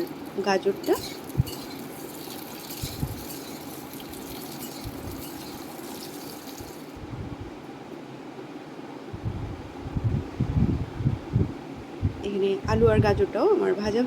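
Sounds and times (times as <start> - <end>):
vegetables sizzling in oil: 0.0 - 7.0.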